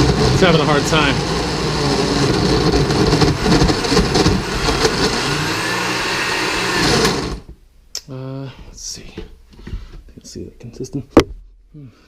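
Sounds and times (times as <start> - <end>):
blender motor straining: 0.0 - 7.5.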